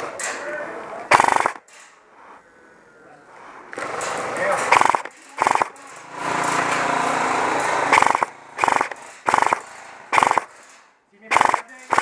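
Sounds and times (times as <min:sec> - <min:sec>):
airsoft machine gun firing: 0:01.1 - 0:01.6, 0:04.7 - 0:05.8, 0:07.9 - 0:10.6, 0:11.3 - 0:12.0.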